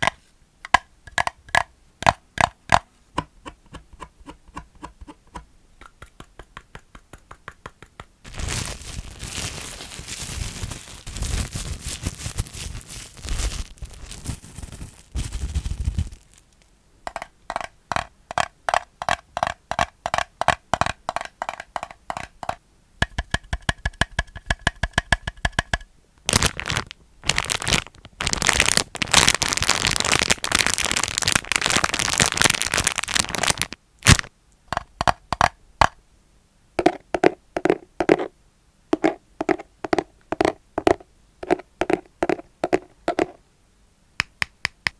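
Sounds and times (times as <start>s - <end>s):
plastic crackling and crinkling: 8.2s - 17.2s, 26.2s - 34.3s.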